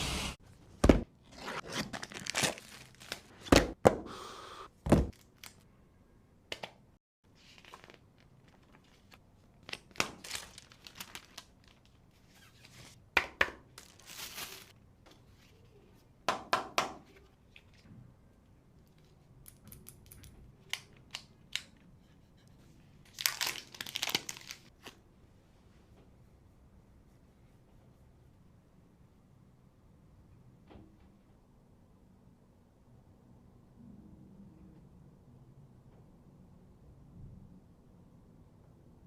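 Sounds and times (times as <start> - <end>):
plastic wrap tearing and crinkling: 1.6 - 3.4, 7.6 - 13.0, 13.8 - 14.7, 23.1 - 25.0.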